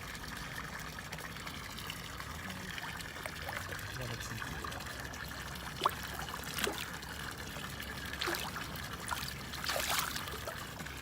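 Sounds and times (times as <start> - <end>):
water trickling: 0.0 - 11.0
short sharp splashes: 5.7 - 7.0, 8.1 - 10.6.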